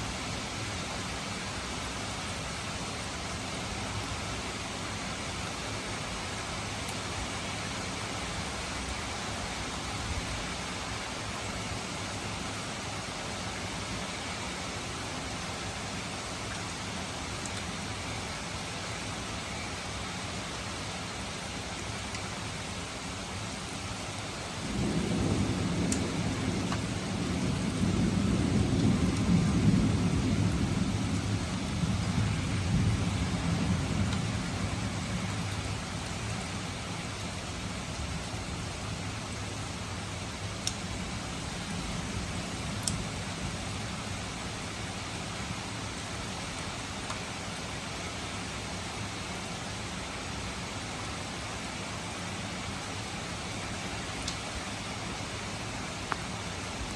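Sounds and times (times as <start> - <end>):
gentle rain: 0.0 - 56.9
faint drip ticks: 3.9 - 4.2, 16.5 - 16.8, 17.4 - 17.8, 21.8 - 22.5, 25.8 - 26.9, 34.0 - 38.4, 40.4 - 41.0, 42.7 - 43.8, 47.0 - 47.3, 54.2 - 54.5, 55.9 - 56.9
rolling thunder: 24.6 - 36.0.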